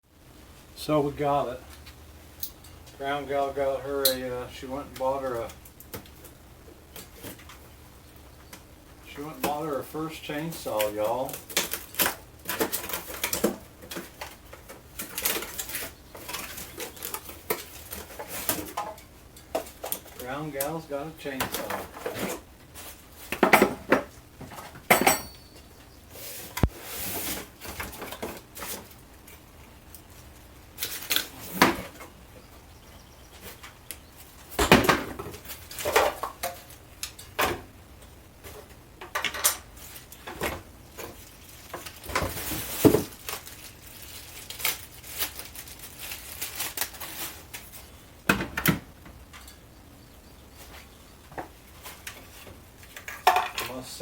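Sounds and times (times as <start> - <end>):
objects clinking and knocking: 23.3 - 25.6, 52.8 - 53.8.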